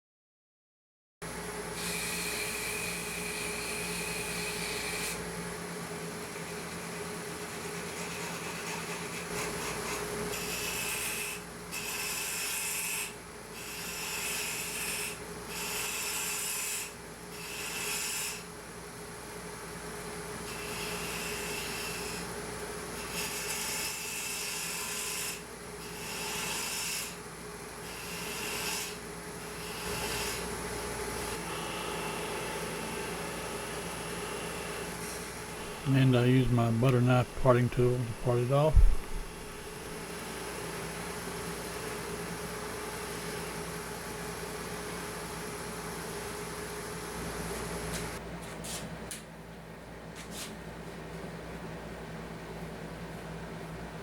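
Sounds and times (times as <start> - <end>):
turning tool scraping wood: 7.3 - 10.8.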